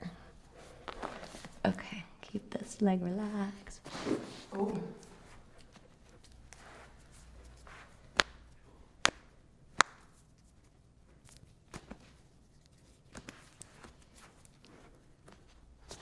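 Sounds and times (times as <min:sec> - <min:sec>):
faint joint pops and clicks: 0:08.1 - 0:10.3.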